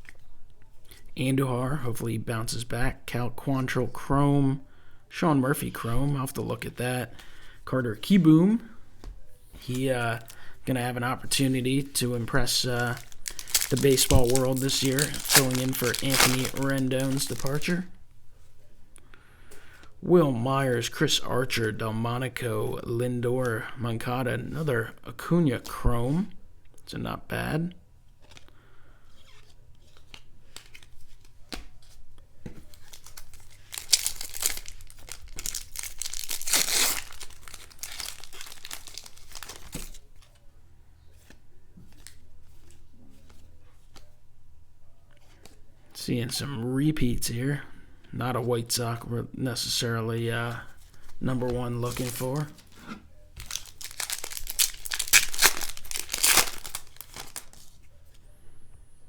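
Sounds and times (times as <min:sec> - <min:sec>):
foil wrapper tearing and crinkling: 0:12.5 - 0:17.8, 0:32.7 - 0:40.0, 0:51.5 - 0:52.7, 0:53.4 - 0:57.8.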